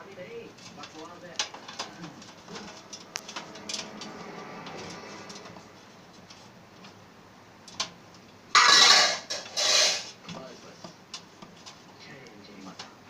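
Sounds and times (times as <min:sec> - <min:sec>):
loud scrape or rustle: 0:08.6 - 0:10.2.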